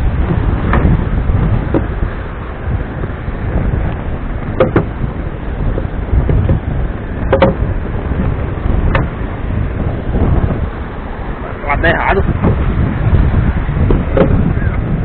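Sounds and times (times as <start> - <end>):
wind buffeting microphone: 0.0 - 15.0
short knocks: 4.5 - 5.0, 7.3 - 7.7, 13.8 - 14.4.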